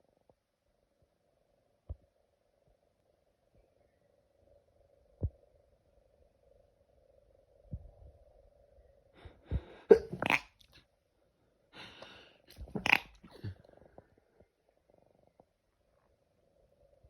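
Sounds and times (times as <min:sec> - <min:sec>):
person sneezing: 0:09.8 - 0:10.5, 0:12.5 - 0:13.6.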